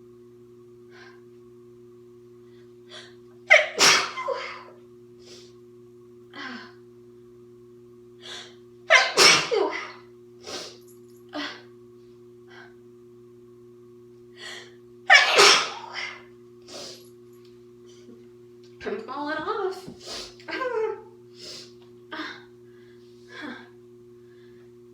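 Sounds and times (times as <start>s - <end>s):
faint steady hum: 0.0s - 24.9s
woman sneezing: 3.0s - 4.7s, 8.9s - 10.0s, 15.1s - 16.2s.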